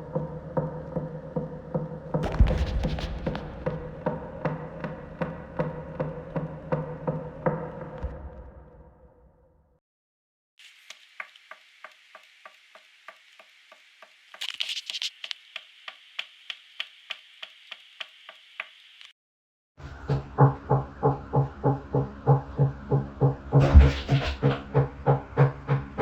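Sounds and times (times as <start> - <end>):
heavy rhythmic thumps: 2.2 - 8.5
thin hiss: 10.6 - 19.1.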